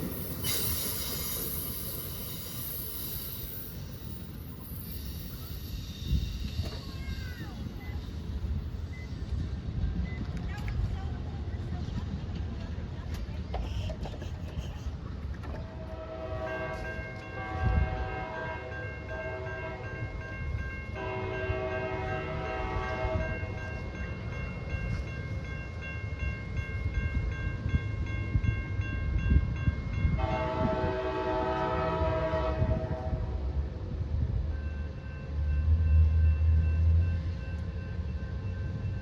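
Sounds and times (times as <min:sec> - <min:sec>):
train rumbling past: 0:00.0 - 0:39.0
locomotive air horn blasts: 0:15.7 - 0:19.8, 0:21.0 - 0:23.4, 0:30.2 - 0:33.4.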